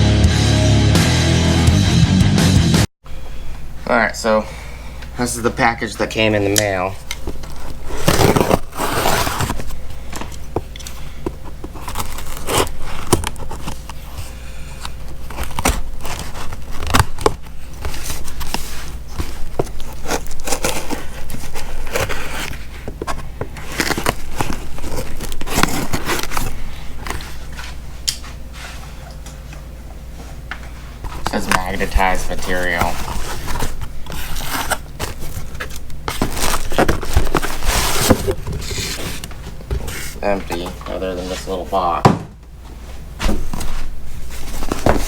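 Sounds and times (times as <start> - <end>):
package being torn open: 7.6 - 9.6, 23.6 - 26.6, 31.3 - 39.1.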